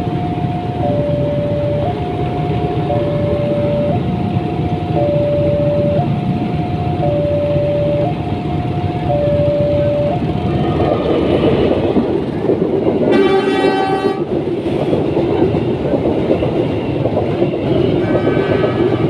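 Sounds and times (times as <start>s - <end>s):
train rumbling and clattering: 0.0s - 19.0s
train horn: 13.0s - 14.4s.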